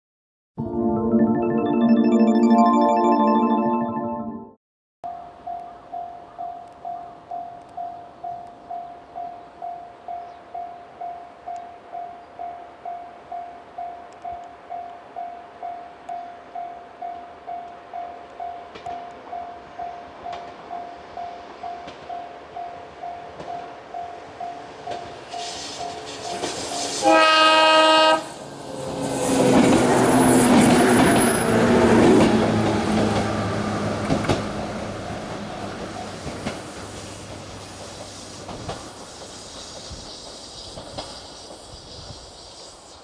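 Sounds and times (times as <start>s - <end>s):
level crossing bell dinging: 0.6s - 4.5s
train rumbling with wheel clatter: 18.2s - 43.0s
train horn blast: 27.0s - 28.4s.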